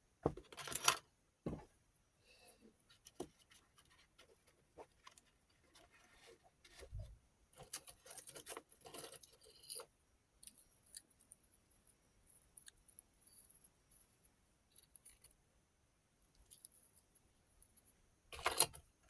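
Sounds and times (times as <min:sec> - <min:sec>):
soft thump: 0:01.4 - 0:01.7
small parts clicking and rattling: 0:07.6 - 0:13.7, 0:14.7 - 0:15.4, 0:16.4 - 0:18.9.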